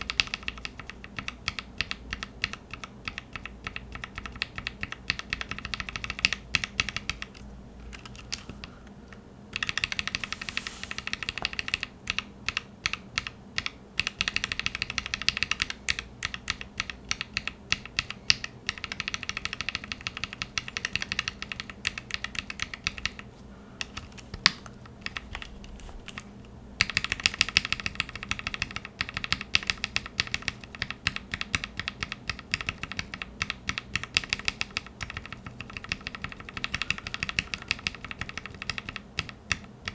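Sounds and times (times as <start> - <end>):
mechanical keyboard keystrokes clacking: 26.8 - 39.9.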